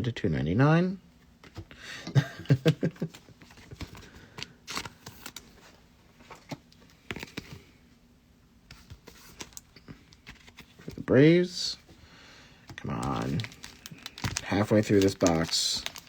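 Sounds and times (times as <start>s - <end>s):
cards and wrappers rustling: 2.6s - 7.8s, 8.7s - 11.9s, 12.6s - 16.0s.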